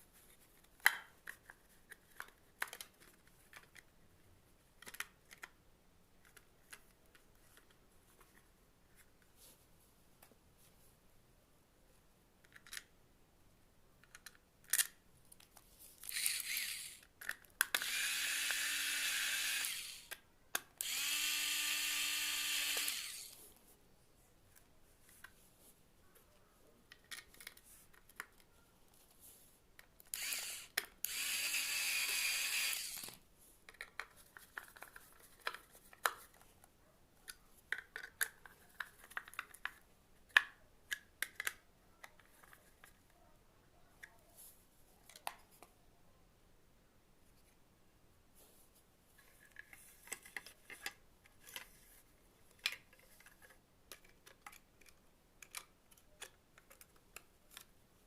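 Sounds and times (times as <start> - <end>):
tools and plastic parts clicking: 0.6 - 3.9, 4.8 - 5.6, 12.4 - 12.9, 14.0 - 23.4, 26.9 - 28.5, 29.8 - 36.6, 37.2 - 43.0, 49.2 - 51.9, 52.5 - 57.8.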